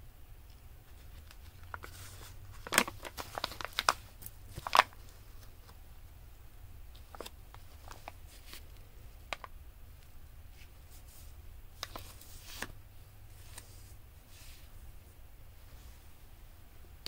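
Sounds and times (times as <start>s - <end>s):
steady low hum: 0.0s - 17.0s
paper rustling: 0.9s - 5.8s, 10.5s - 14.7s.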